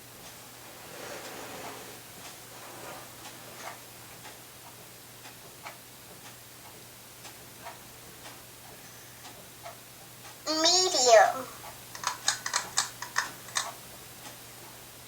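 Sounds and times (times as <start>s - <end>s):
ceiling fan humming: 0.0s - 15.0s
fan light ticks: 3.2s - 10.4s, 11.6s - 14.8s.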